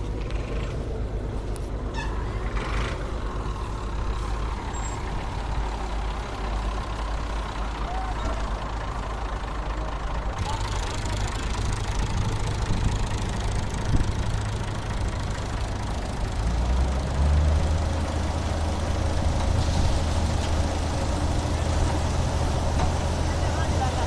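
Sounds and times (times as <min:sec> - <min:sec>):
harvester engine running: 0:00.0 - 0:24.0.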